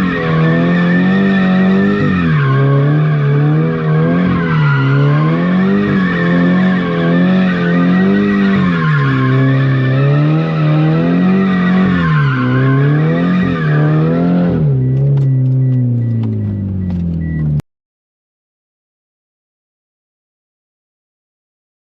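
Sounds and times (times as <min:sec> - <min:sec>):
car engine revving: 0:00.0 - 0:17.6
tires squealing: 0:00.0 - 0:17.6.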